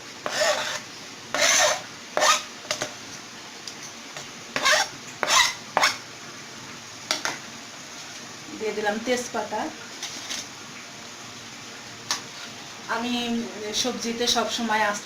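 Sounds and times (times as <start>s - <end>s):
utensil scraping cookware: 0.0s - 2.9s, 4.6s - 6.0s.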